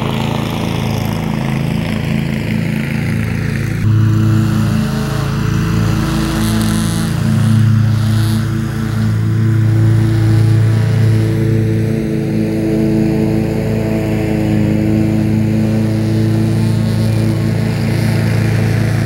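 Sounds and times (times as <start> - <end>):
lawn mower engine running: 0.0 - 19.0.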